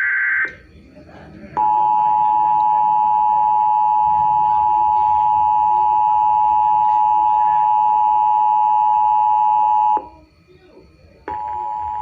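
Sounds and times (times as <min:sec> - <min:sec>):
two-tone emergency alert signal: 0:01.6 - 0:10.1, 0:11.3 - 0:12.0.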